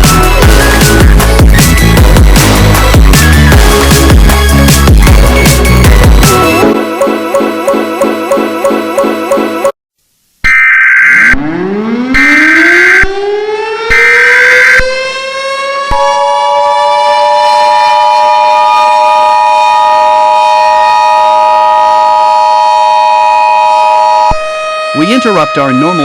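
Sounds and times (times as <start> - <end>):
civil defense siren winding up: 10.5 - 26.0.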